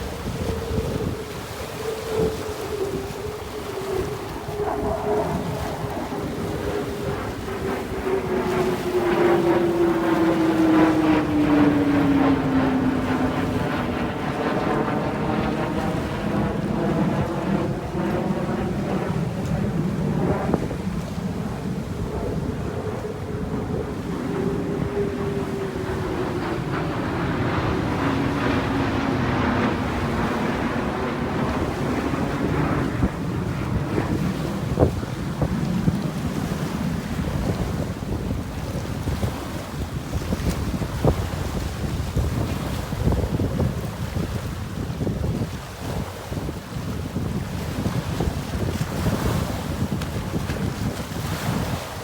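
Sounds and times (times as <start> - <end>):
passing engine drone: 0.0 - 39.6
lapping waves: 0.0 - 52.0
surf: 0.0 - 52.0
wind: 0.0 - 52.0.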